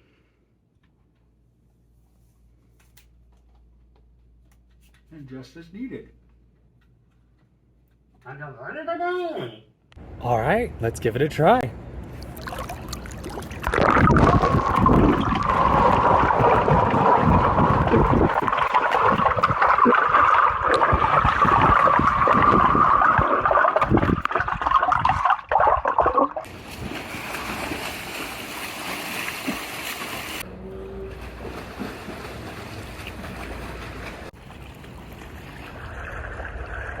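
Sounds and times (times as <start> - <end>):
water splashing and gurgling: 12.1 - 30.4, 31.0 - 37.0.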